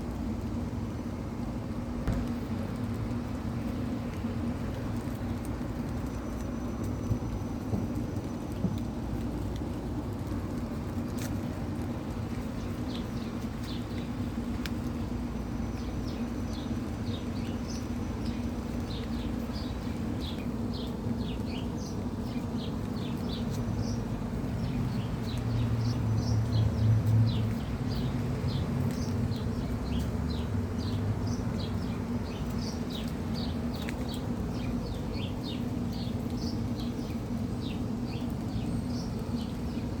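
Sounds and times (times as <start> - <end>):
small birds chirping: 3.6 - 40.0
passing vehicle rumble: 23.8 - 32.6.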